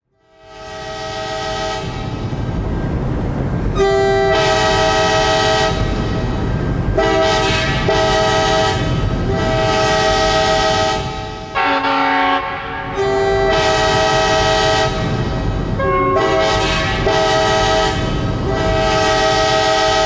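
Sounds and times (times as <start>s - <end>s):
locomotive air horn chord: 0.2s - 2.6s, 3.6s - 20.0s.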